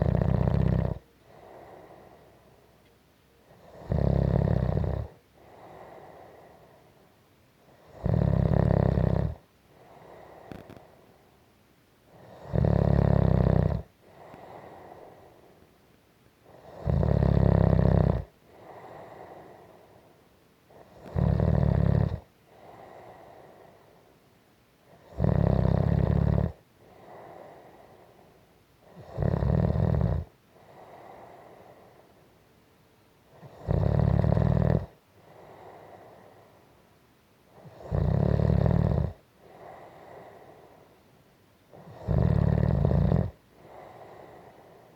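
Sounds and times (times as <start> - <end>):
person snoring: 0.0 - 2.2, 3.6 - 6.6, 7.8 - 10.8, 12.2 - 15.3, 16.5 - 19.7, 20.8 - 23.7, 25.0 - 28.0, 28.9 - 31.9, 33.4 - 36.3, 37.6 - 40.8, 41.7 - 44.8.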